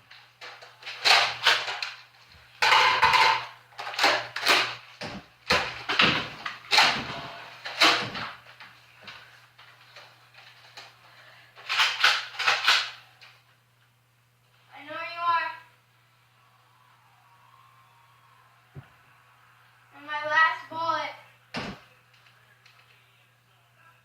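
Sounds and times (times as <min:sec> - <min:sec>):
faint low hum: 0:00.0 - 0:24.0
toy blaster clacks and pops: 0:00.5 - 0:02.0, 0:11.7 - 0:13.0.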